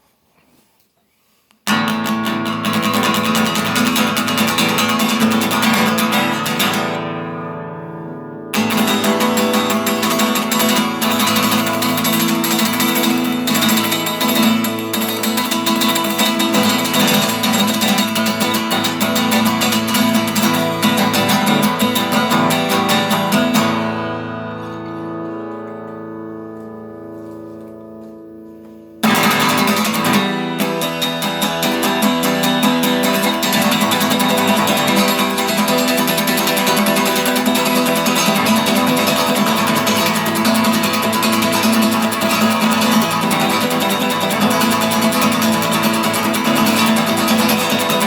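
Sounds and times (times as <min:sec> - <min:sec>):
guitar strummed rapidly: 0:01.7 - 0:48.0.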